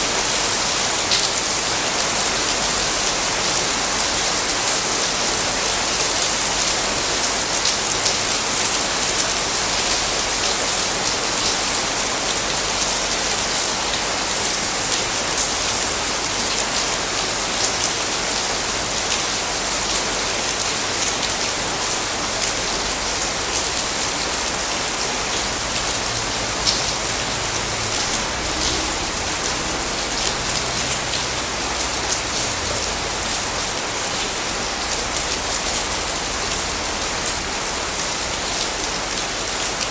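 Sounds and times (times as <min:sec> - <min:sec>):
rain hissing on surfaces: 0:00.0 - 0:39.9
raindrops ticking: 0:22.4 - 0:38.9.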